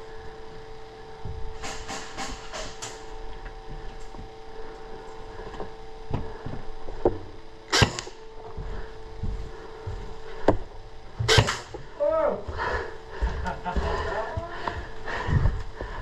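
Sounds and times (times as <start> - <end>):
steady electrical hum: 0.0 - 16.0.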